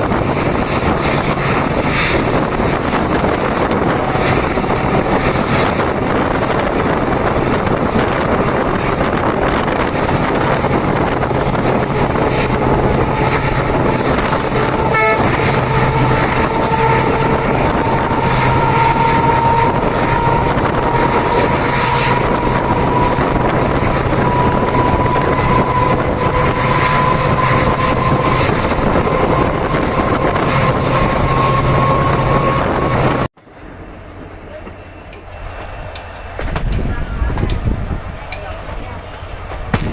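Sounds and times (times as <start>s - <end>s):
diesel locomotive drone: 0.0s - 39.9s
whine rising in pitch: 9.7s - 36.1s.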